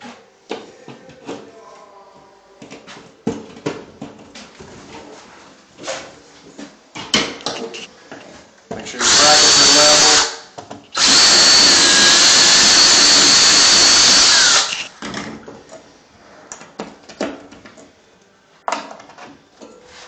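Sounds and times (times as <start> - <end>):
power drill drilling into wall: 9.0 - 14.9.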